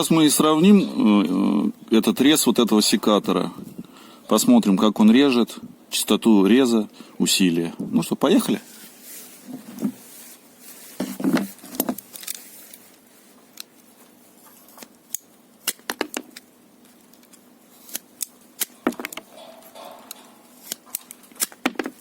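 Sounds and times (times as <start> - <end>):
pruning shears cutting branch: 17.2 - 22.0.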